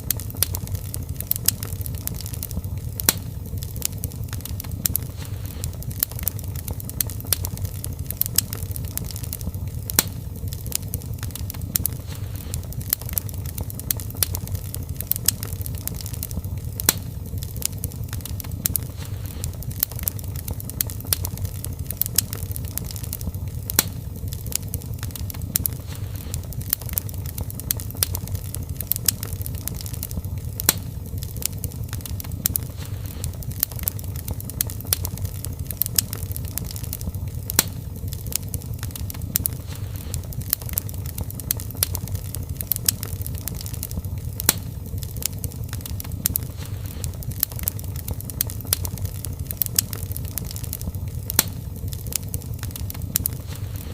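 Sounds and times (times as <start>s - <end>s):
fire crackles and pops: 0.0s - 53.9s
low rumble of flames: 0.0s - 53.9s.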